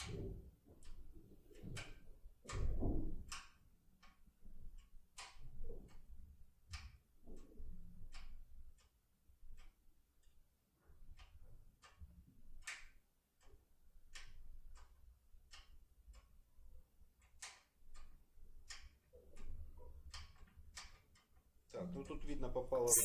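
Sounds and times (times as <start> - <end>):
faint clicking of lock pick: 8.1 - 10.4, 12.6 - 16.4, 17.2 - 21.4.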